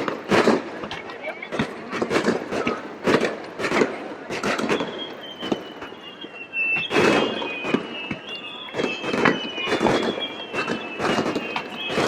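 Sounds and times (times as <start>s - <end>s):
fireworks bangs and crackles: 0.0s - 12.0s
high whistle: 4.5s - 12.0s.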